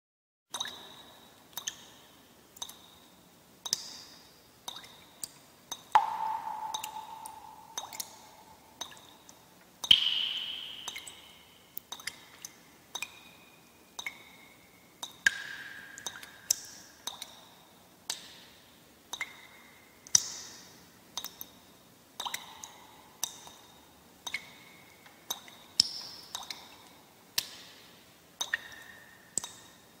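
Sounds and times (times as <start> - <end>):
water dripping: 0.5 - 30.0.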